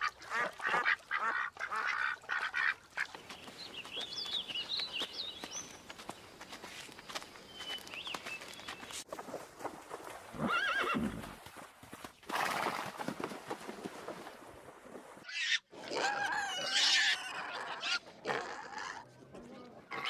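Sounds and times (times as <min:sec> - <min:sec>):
horse neighing: 0:10.4 - 0:11.2.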